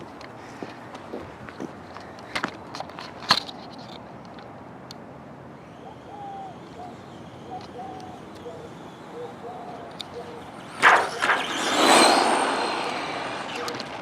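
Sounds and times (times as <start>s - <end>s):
high-pitched motor whine: 5.5s - 14.0s
rc truck driving fast: 5.5s - 14.0s.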